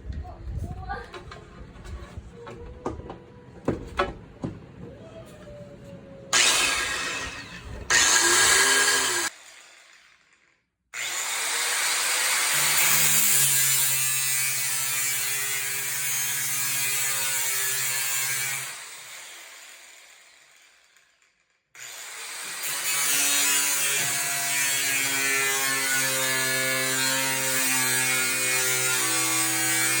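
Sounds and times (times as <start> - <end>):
angle grinder motor running: 6.4 - 16.0.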